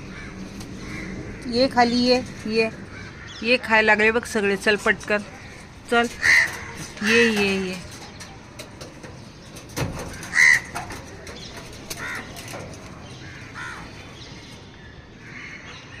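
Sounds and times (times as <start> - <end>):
crows cawing: 0.1 - 1.5, 2.9 - 3.6, 5.4 - 7.2, 10.1 - 10.9, 12.0 - 12.4, 13.2 - 14.0, 15.2 - 15.8.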